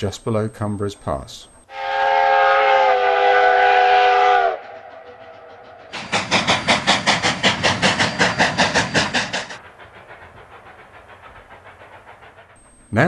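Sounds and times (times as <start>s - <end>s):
steam locomotive chime whistle: 1.7s - 6.1s
fast steam exhaust beats: 1.7s - 13.0s.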